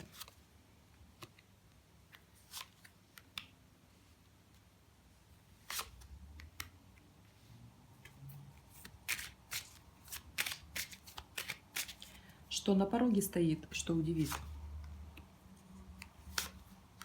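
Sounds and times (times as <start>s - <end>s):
cards tapping and sliding: 8.8s - 12.2s, 16.0s - 17.0s.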